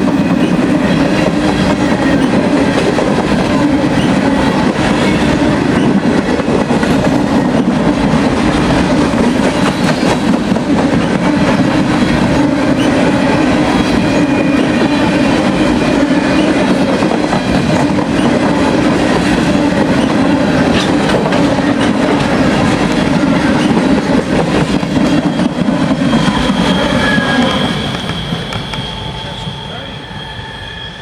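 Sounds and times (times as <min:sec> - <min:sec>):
train wheels rumbling on rail: 0:00.0 - 0:31.0
high wheel squeal: 0:12.7 - 0:18.4, 0:24.5 - 0:31.0.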